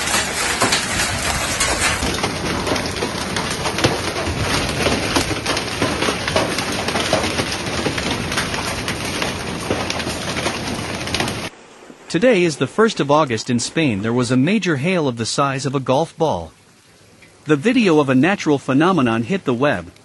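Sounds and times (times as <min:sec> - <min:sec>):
hail and heavy rain pelting: 0:00.0 - 0:16.0.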